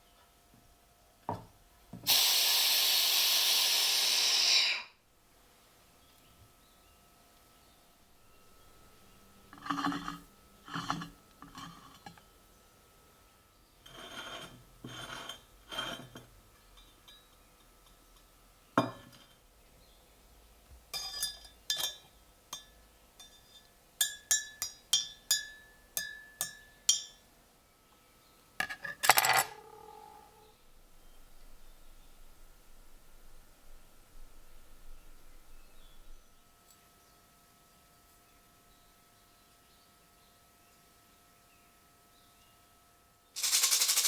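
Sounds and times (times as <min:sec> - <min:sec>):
small metal parts clinking: 0:28.6 - 0:29.7, 0:43.4 - 0:44.0.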